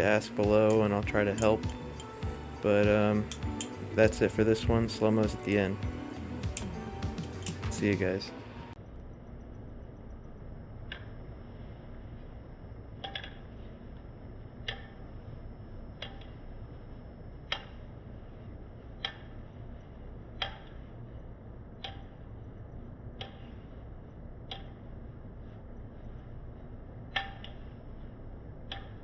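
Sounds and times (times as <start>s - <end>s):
steady low hum: 0.0s - 29.0s
folding knife clicking: 6.5s - 7.7s.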